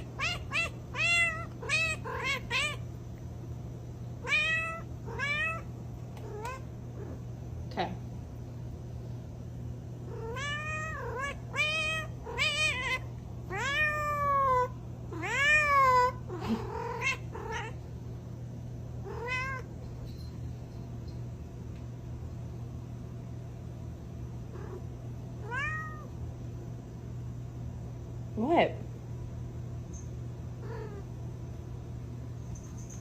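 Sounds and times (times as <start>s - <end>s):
cat meowing: 0.0s - 2.8s, 4.2s - 7.1s, 10.1s - 17.8s, 19.0s - 19.7s, 25.4s - 26.1s.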